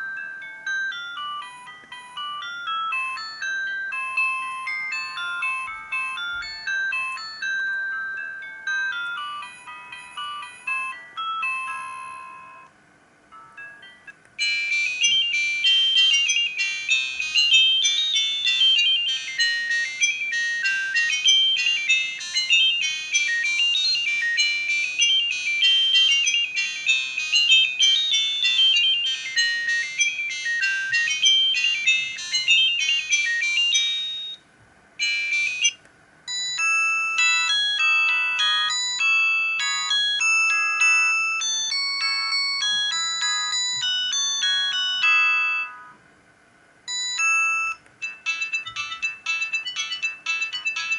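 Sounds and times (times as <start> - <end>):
fast electronic ringtone tune: 0.0 - 12.7, 13.3 - 34.4, 35.0 - 46.0, 46.9 - 50.9
mobile phone ringtones: 0.0 - 12.7, 13.3 - 34.4, 35.0 - 46.0, 46.9 - 50.9.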